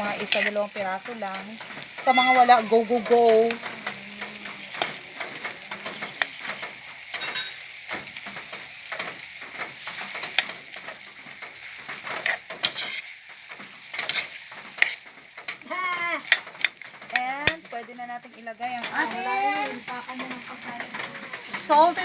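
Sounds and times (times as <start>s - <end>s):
utensil scraping a pan: 0.0s - 7.7s, 11.8s - 15.3s
shrimp sizzling in a pan: 0.0s - 22.0s.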